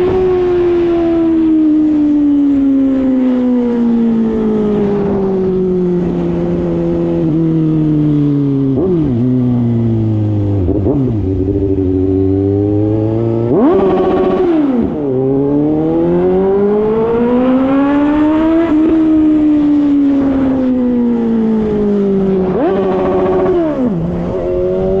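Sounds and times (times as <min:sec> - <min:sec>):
motorcycle engine revving: 0:00.0 - 0:25.0.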